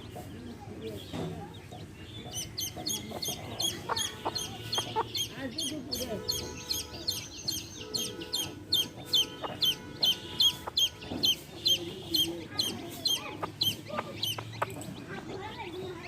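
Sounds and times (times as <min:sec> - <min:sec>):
baby chicks peeping: 0:00.0 - 0:16.0
hen clucking low: 0:02.3 - 0:07.2, 0:08.0 - 0:14.8.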